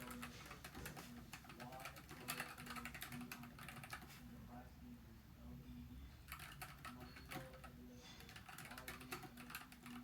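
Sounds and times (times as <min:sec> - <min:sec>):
keyboard typing clicks: 0:06.3 - 0:10.0.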